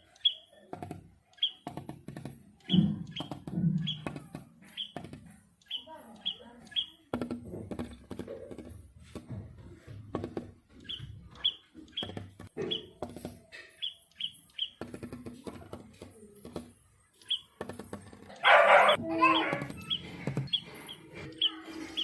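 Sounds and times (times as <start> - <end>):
small bird chirping: 0.0 - 8.8, 10.7 - 22.0
bird tapping on glass window: 0.2 - 20.9.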